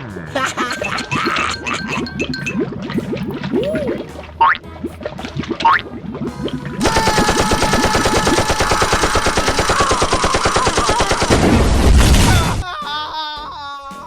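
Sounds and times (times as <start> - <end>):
machine-gun burst: 6.8 - 12.6.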